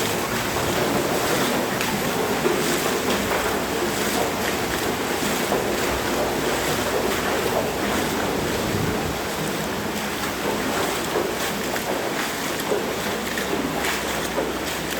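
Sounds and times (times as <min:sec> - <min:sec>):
floodwater rushing: 0:00.0 - 0:14.9
wind noise on microphone: 0:07.2 - 0:10.0.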